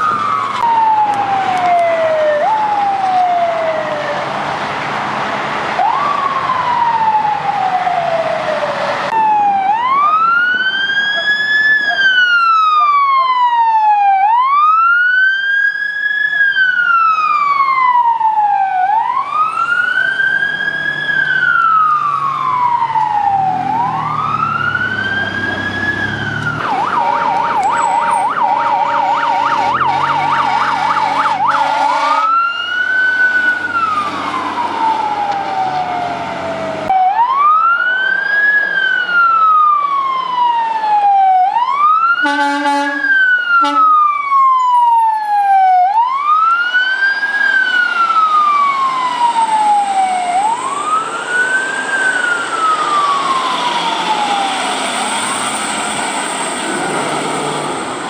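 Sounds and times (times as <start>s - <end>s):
electronic siren wailing and yelping: 5.8s - 15.2s, 16.8s - 57.1s
vehicle horn blast: 30.8s - 32.4s, 42.2s - 43.0s, 43.6s - 43.9s.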